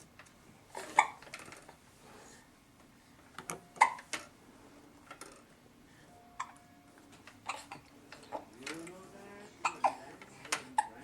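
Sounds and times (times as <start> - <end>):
hiccups: 0.8 - 1.2, 3.8 - 4.1, 6.4 - 6.6, 7.4 - 7.9, 9.6 - 10.1, 10.8 - 11.0.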